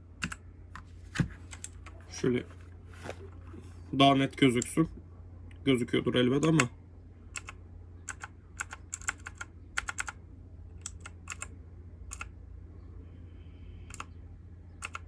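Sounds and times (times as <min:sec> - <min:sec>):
mechanical keyboard keys clicking: 0:07.4 - 0:10.2, 0:10.8 - 0:11.5.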